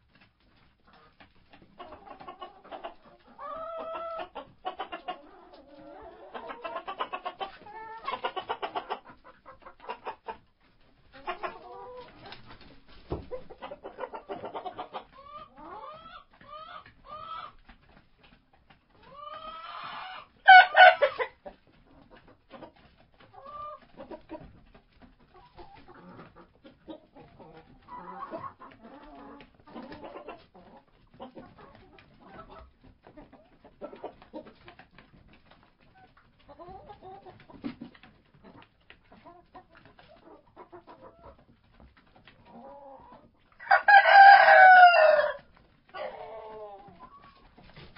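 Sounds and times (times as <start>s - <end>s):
chickens clucking: 0.0s - 47.9s
rooster crowing: 43.6s - 45.4s.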